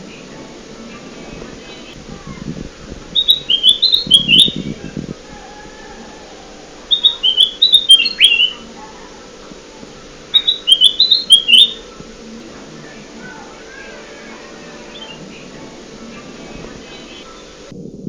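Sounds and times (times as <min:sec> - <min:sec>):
bird whistled song: 0:03.1 - 0:06.0, 0:06.7 - 0:12.1, 0:12.8 - 0:17.7.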